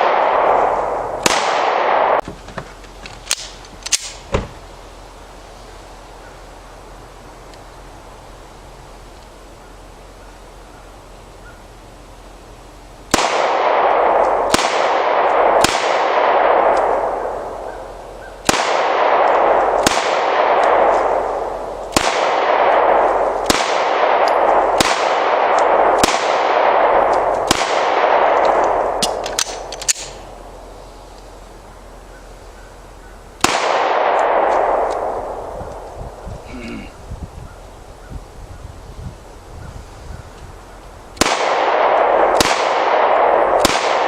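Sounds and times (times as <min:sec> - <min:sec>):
pistol shots echoing: 0:00.0 - 0:02.2, 0:13.1 - 0:30.2, 0:33.4 - 0:35.5, 0:41.2 - 0:44.0.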